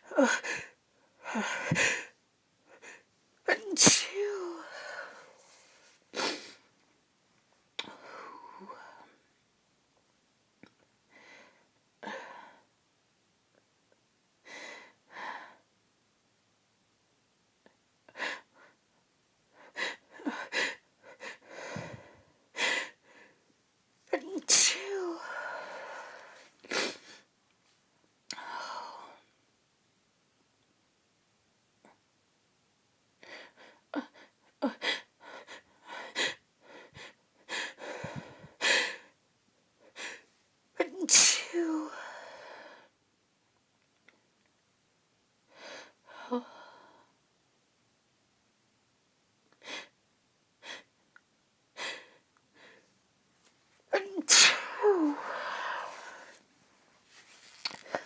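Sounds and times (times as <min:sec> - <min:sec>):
woman gasping breaths: 0:00.0 - 0:02.1, 0:02.8 - 0:06.6, 0:19.7 - 0:23.0, 0:24.5 - 0:27.2, 0:34.8 - 0:39.0, 0:54.0 - 0:56.4
woman's sharp inhales: 0:03.8 - 0:05.3.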